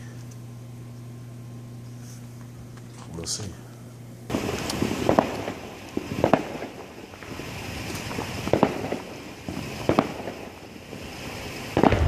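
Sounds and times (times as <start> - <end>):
fireworks bangs: 4.3 - 12.0.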